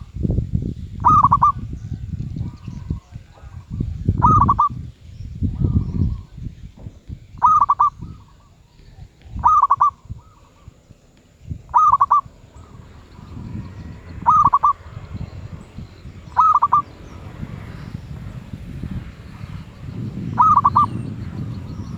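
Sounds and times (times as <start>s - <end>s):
dove cooing: 1.0s - 1.7s, 2.9s - 4.8s, 7.4s - 8.4s, 9.3s - 10.8s, 11.5s - 21.9s
low rumble: 11.4s - 21.9s.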